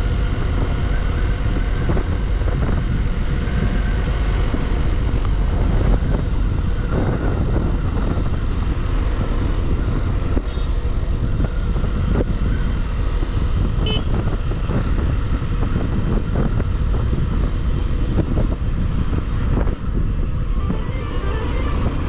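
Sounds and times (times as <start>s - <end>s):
motorcycle engine and tyres: 0.0s - 22.0s
wind rush over microphone: 0.0s - 22.0s
high-pitched beep: 20.5s - 22.0s.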